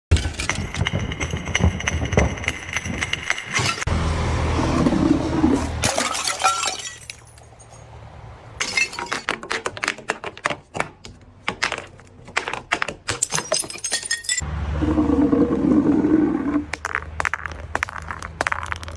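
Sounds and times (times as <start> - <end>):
shattering glass cracks and clinks: 5.8 - 7.8, 13.1 - 14.4
glass bottles breaking: 5.8 - 7.9, 8.6 - 9.3, 13.1 - 14.4.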